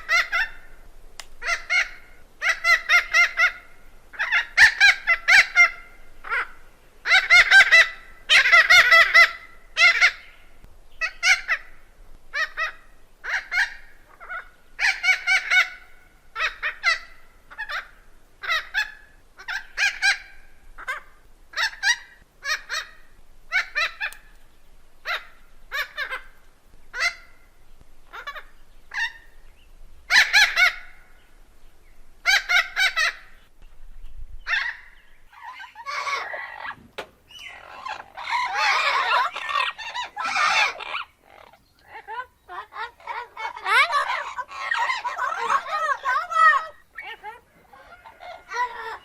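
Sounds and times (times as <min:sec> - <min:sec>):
parrot squawking: 0:26.9 - 0:27.3, 0:34.5 - 0:49.0.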